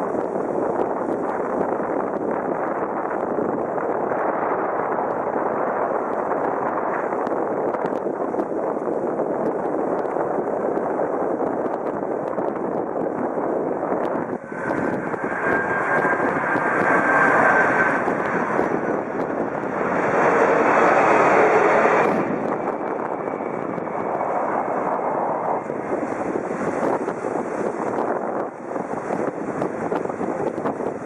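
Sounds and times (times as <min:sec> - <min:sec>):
airliner jet engines running: 0:00.0 - 0:31.0
faint high whine: 0:13.6 - 0:31.0.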